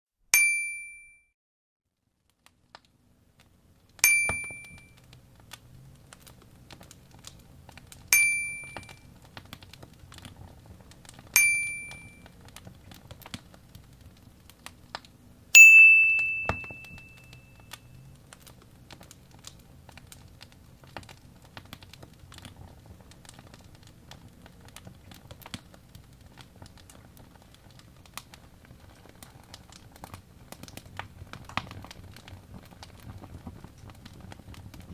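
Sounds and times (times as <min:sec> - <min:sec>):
bell-like dings: 0:00.4 - 0:01.3, 0:04.0 - 0:04.9, 0:08.2 - 0:09.0, 0:11.4 - 0:12.2, 0:15.6 - 0:17.6
fireplace crackling: 0:02.2 - 0:34.9.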